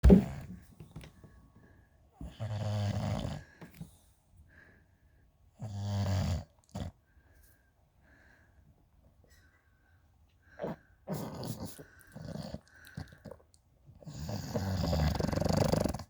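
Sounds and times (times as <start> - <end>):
dog snoring: 2.2 - 3.5, 5.6 - 6.9, 10.6 - 13.4, 14.0 - 16.0.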